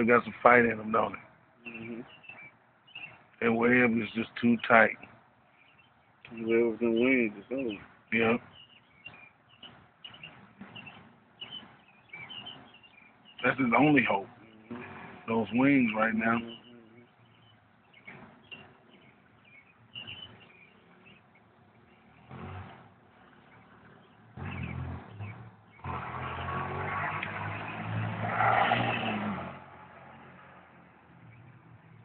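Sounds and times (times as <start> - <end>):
road noise: 0.0 - 32.0
vehicle engine passing: 0.0 - 32.0.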